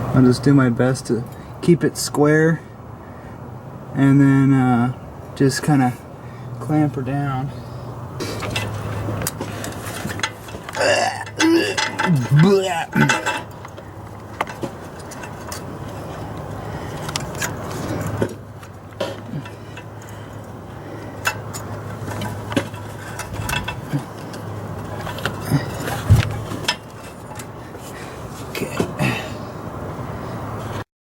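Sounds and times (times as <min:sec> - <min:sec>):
hand tools clicking on metal: 0:08.4 - 0:15.7.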